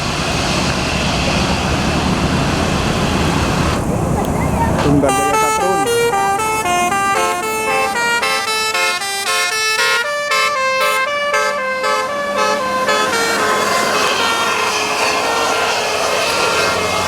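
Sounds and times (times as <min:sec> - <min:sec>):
musical air horn melody: 0:04.8 - 0:17.0
steady noisy rush: 0:11.5 - 0:17.0.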